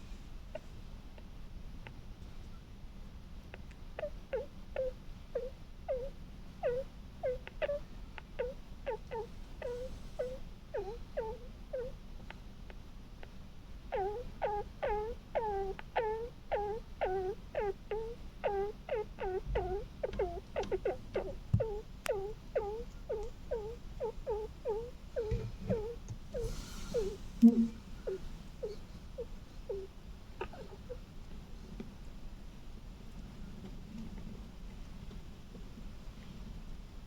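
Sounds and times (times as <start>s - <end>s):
pet snoring with whistling squeaks: 4.8s - 7.8s, 9.2s - 12.0s, 14.0s - 28.8s.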